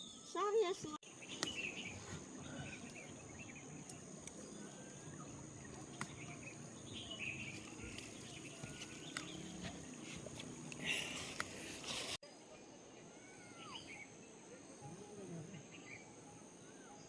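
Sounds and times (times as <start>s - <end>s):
bird chirps: 0.0s - 11.9s.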